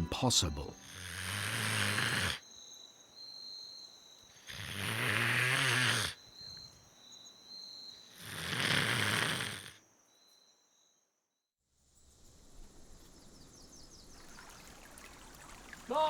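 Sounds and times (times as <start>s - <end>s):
man snoring loudly: 0.8s - 2.4s, 4.4s - 6.2s, 8.2s - 9.8s.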